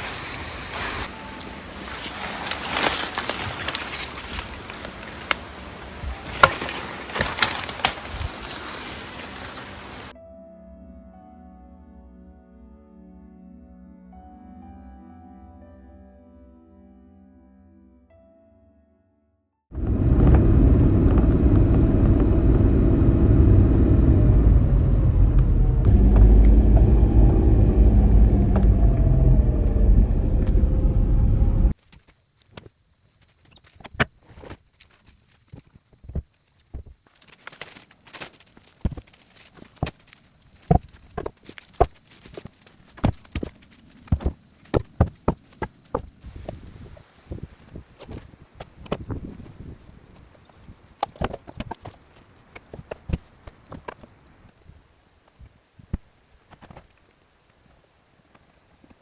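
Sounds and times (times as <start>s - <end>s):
light crunches and snaps: 2.5s - 8.7s, 31.7s - 46.3s
motor vehicle rumble: 19.7s - 31.8s.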